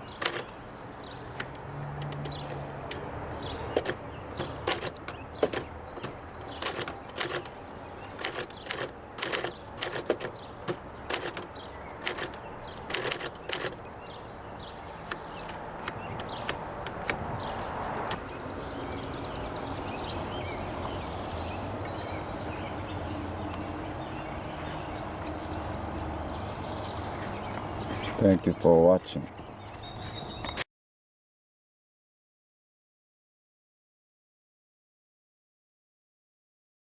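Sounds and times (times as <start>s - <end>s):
typewriter key strikes: 0.0s - 0.6s, 3.7s - 13.8s.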